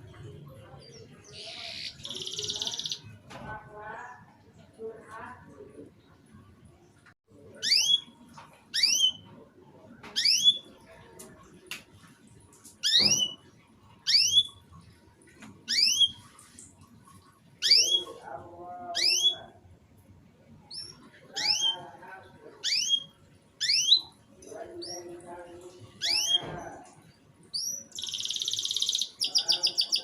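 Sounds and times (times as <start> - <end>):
canary chirping: 0.8 - 3.1, 7.6 - 9.3, 10.2 - 10.7, 14.0 - 14.6, 15.7 - 16.3, 17.6 - 18.2, 18.9 - 19.5, 20.7 - 21.9, 22.6 - 24.2, 26.0 - 26.4, 27.6 - 30.0.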